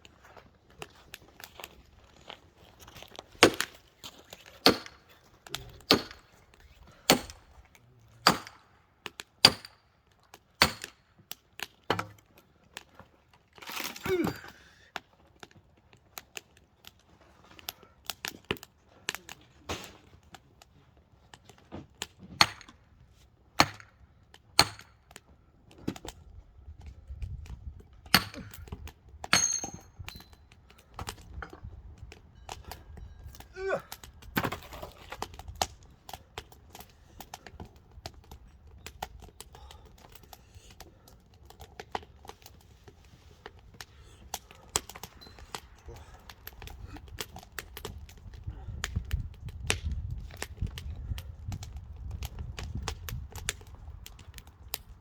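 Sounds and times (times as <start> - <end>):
firewood being chopped: 2.8 - 12.9, 21.3 - 22.9, 23.6 - 26.2, 26.8 - 31.4, 32.0 - 55.0.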